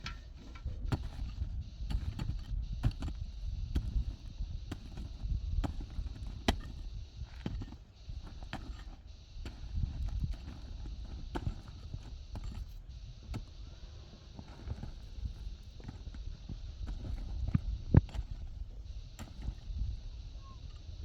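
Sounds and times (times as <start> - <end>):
irregular knocks and clicks: 0.0 - 13.6.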